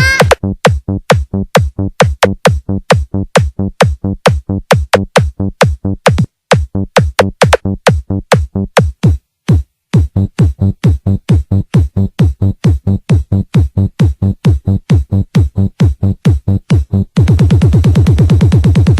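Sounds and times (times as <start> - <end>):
electronic dance music: 0.0 - 18.9
heavy bass kicks: 0.3 - 18.9.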